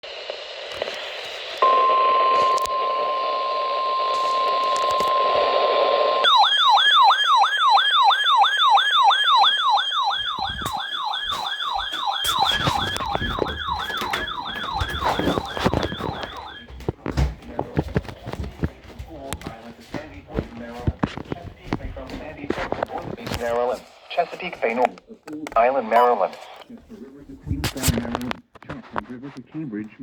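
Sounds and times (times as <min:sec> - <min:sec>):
radio static: 0:00.0 - 0:06.2, 0:10.0 - 0:30.0
steady warning tone: 0:01.6 - 0:18.0
clicks and thumps: 0:10.2 - 0:23.6.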